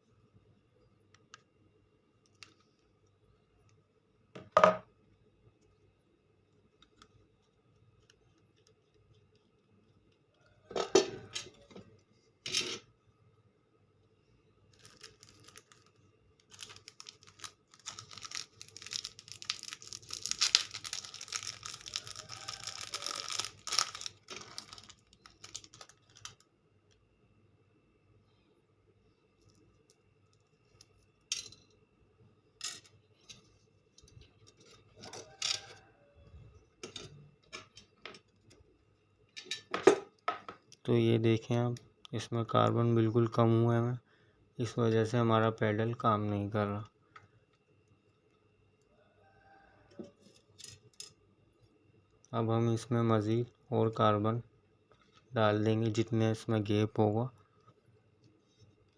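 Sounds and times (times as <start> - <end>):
small hard parts clicking: 14.7 - 26.4.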